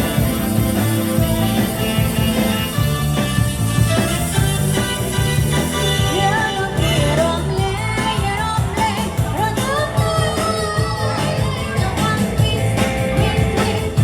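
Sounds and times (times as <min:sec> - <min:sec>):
bass and drum beat: 0:00.0 - 0:14.0
live band playing: 0:00.0 - 0:14.0
person singing: 0:05.8 - 0:14.0.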